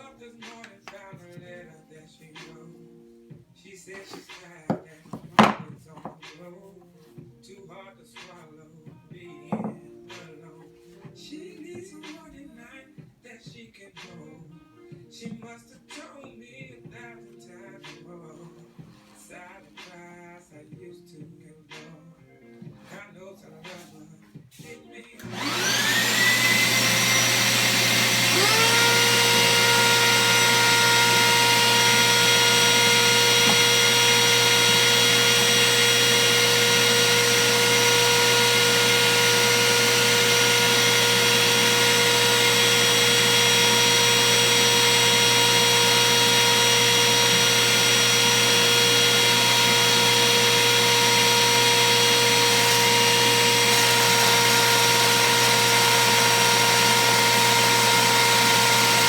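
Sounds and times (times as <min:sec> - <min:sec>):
wood router motor whining: 0:25.2 - 0:59.0.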